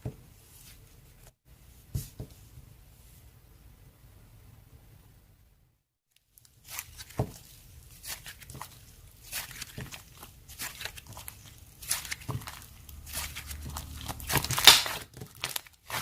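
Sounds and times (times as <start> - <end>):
hands handling object crackling: 6.2 - 16.0.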